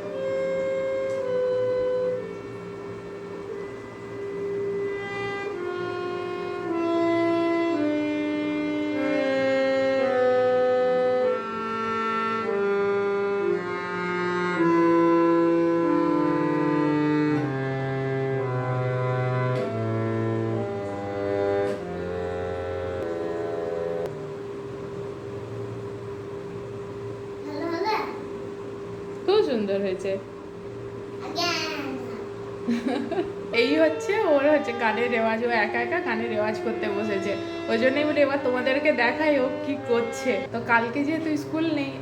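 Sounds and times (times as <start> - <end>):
harmonium notes wandering: 0.0 - 24.2, 33.4 - 42.0
held harmonium drone note: 0.0 - 24.2, 33.4 - 42.0.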